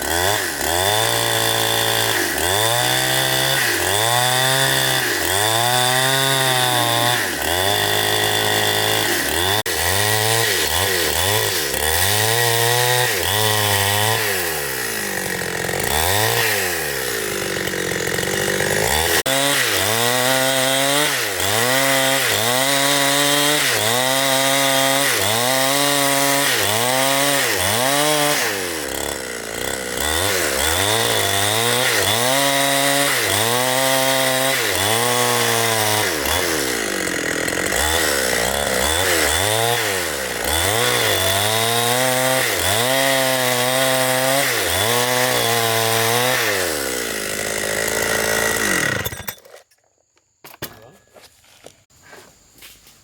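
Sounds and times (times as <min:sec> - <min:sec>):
chainsaw cutting tree: 0:00.0 - 0:49.6.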